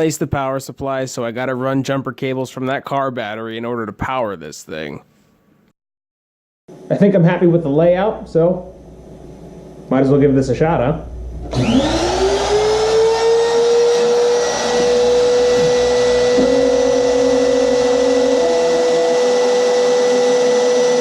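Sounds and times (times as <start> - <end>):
spindle motor whine: 11.2 - 21.0.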